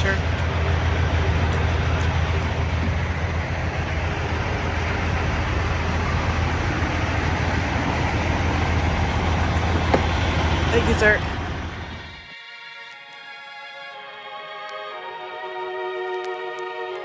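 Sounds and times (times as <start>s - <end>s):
diesel truck engine drone: 0.0s - 12.3s
low hum: 0.0s - 12.3s
road noise: 0.0s - 12.4s.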